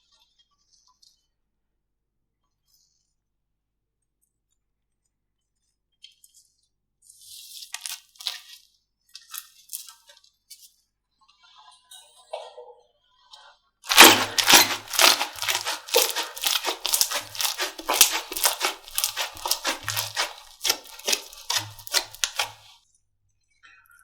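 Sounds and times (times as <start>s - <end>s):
slime crackling and popping: 7.8s - 8.4s, 13.9s - 22.6s.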